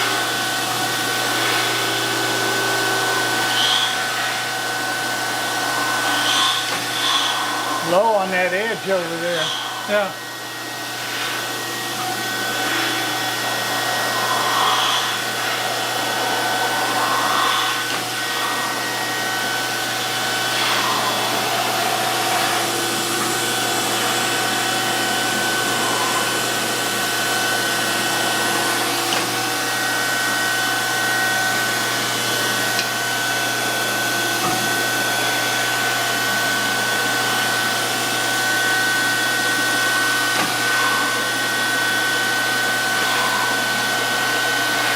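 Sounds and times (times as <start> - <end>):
grinding hiss: 0.0 - 44.9
surface grinder whirring: 0.0 - 44.9.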